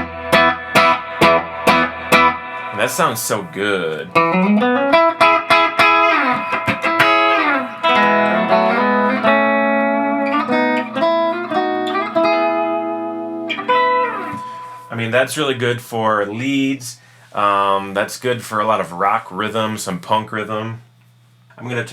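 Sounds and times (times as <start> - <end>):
electric guitar playing: 0.0 - 14.9.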